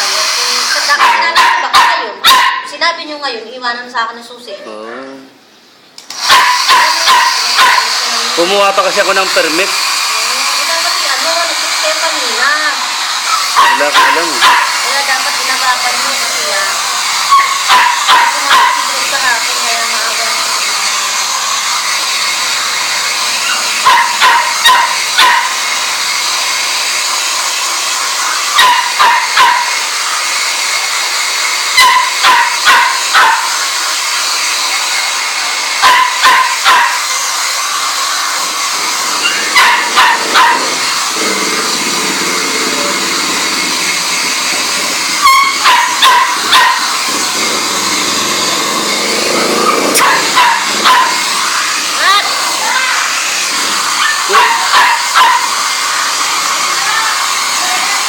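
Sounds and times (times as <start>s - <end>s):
small dog yapping: 1.0s - 2.7s, 6.2s - 7.9s, 13.2s - 14.8s, 17.2s - 18.9s, 23.4s - 25.7s, 28.5s - 29.8s, 31.8s - 33.6s, 35.8s - 37.1s, 39.1s - 41.0s, 45.2s - 47.0s, 49.6s - 51.4s, 53.9s - 55.6s.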